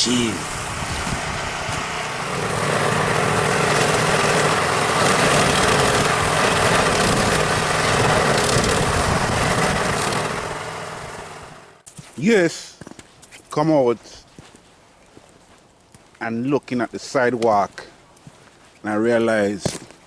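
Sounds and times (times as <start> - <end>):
snowblower engine running: 0.0 - 11.8.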